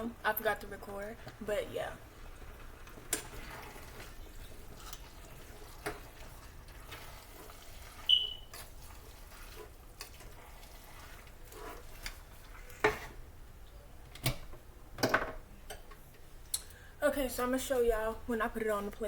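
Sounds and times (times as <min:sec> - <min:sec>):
faint steady hiss: 0:00.0 - 0:19.0.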